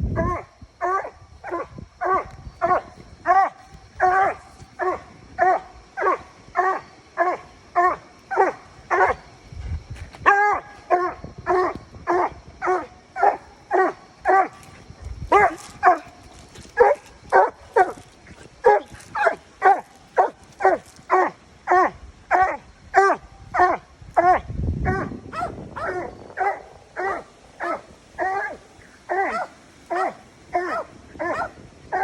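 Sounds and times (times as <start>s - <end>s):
dog barking: 0.2s - 9.2s, 15.3s - 16.2s, 16.8s - 32.0s.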